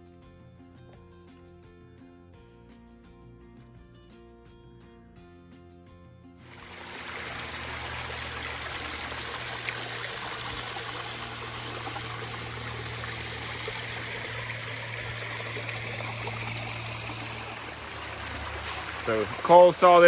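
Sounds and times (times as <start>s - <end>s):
water splashing over rocks: 6.5s - 20.0s.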